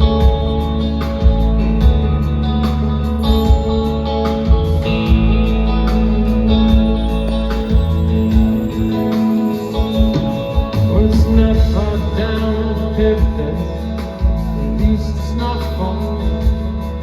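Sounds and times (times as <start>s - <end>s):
soft rock band playing: 0.0s - 17.0s
man singing: 10.1s - 17.0s.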